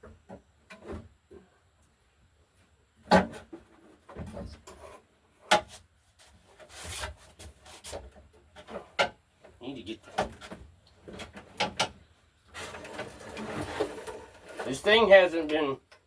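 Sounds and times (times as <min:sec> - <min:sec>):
knocks and clunks: 0:03.0 - 0:04.7.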